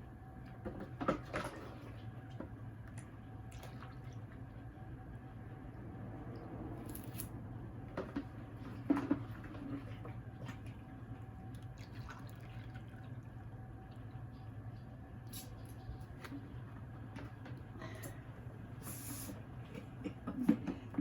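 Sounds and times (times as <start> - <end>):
steady low hum: 0.0 - 21.0
liquid dripping and sloshing: 0.4 - 6.7, 7.9 - 18.1.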